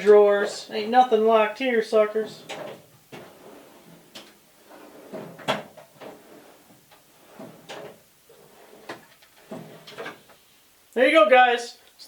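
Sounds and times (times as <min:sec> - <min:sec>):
metal drawers sliding and shutting: 0:02.2 - 0:10.3.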